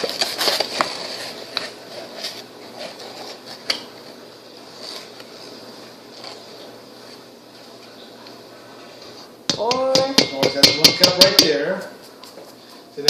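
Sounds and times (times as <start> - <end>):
cup knocking and tapping: 9.5 - 11.5.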